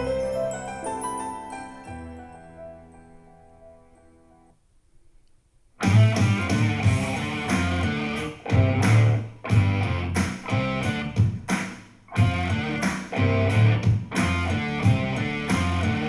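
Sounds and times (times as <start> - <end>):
chiming music through speakers: 0.0 - 4.5
song with strummed guitar and bass: 5.8 - 11.5, 12.2 - 16.0.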